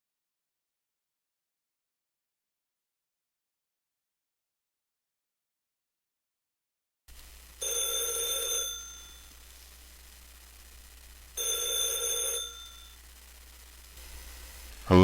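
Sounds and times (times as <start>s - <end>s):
line hum and hiss: 7.1s - 15.0s
telephone ringing: 7.6s - 9.3s, 11.4s - 13.0s.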